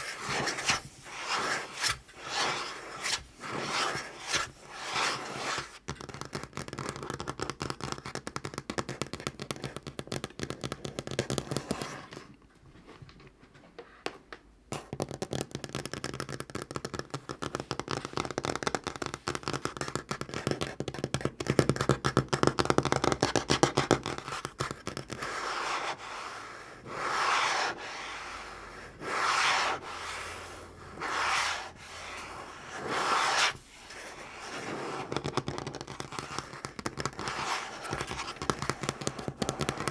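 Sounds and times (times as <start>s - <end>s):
sweeping strokes across a table: 0.0s - 5.8s, 25.2s - 35.2s.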